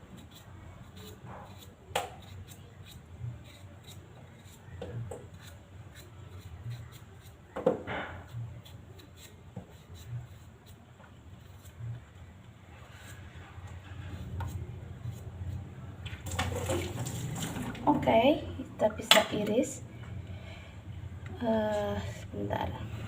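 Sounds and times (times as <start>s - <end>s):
potato peeling scrapes: 0.0s - 7.6s, 8.2s - 12.1s, 12.7s - 17.7s.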